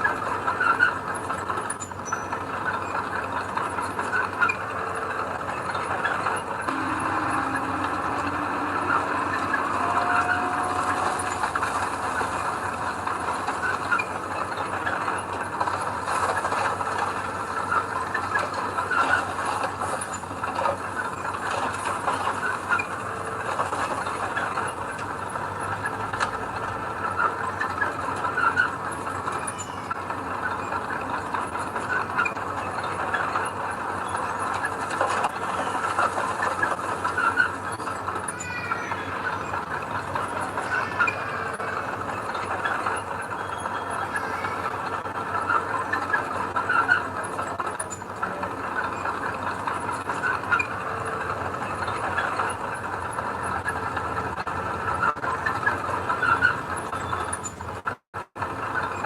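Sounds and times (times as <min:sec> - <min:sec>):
diesel engine running: 0:00.0 - 0:59.0
brief squeals: 0:06.7 - 0:15.0.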